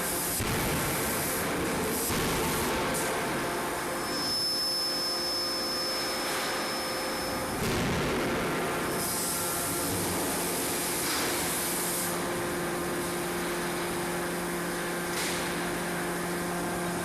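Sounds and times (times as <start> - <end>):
machinery hum: 0.0 - 17.0.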